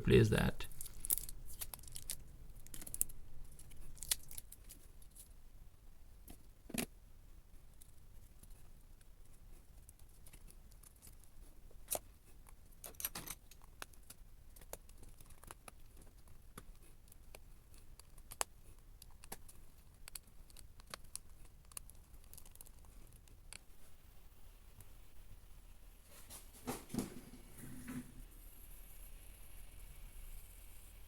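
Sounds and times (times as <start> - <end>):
tools and laptop parts clicking: 12.8 - 16.7.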